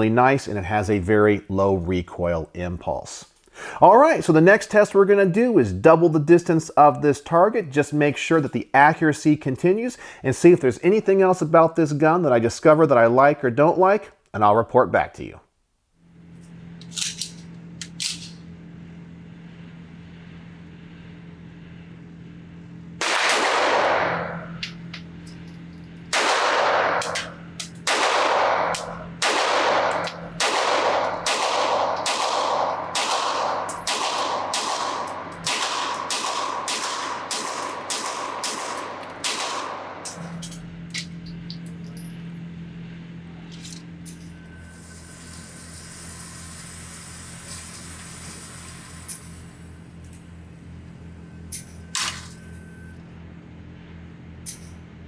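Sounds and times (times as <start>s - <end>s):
steady low hum: 0.0s - 55.0s
pistol shots: 23.0s - 24.5s, 26.1s - 40.1s.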